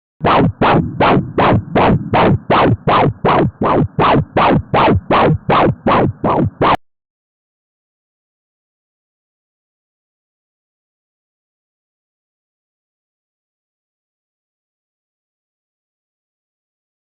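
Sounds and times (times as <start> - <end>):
ultrasound whooshing heartbeat: 0.2 - 6.8.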